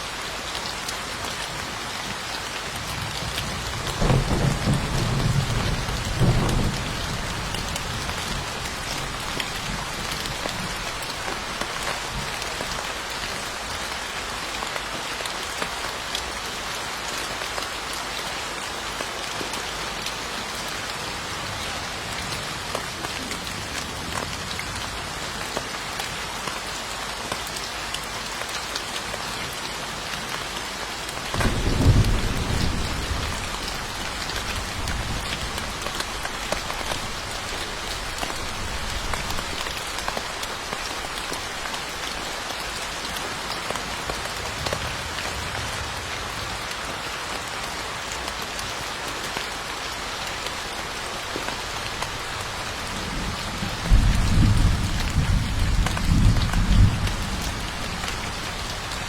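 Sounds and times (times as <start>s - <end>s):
steady rain falling: 0.0s - 59.0s
thunder rolling: 3.8s - 8.4s, 31.4s - 35.8s.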